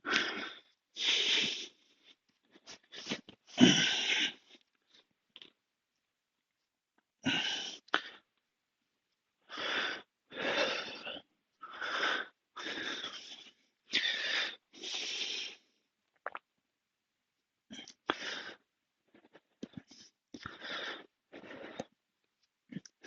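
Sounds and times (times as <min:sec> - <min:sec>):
man breathing hard: 0:00.0 - 0:04.6, 0:09.5 - 0:15.7, 0:18.1 - 0:22.0.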